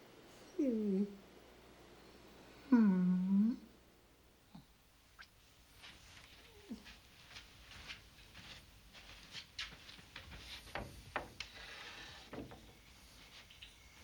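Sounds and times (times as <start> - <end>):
soft knocks and clicks: 10.7 - 11.6, 12.3 - 12.8.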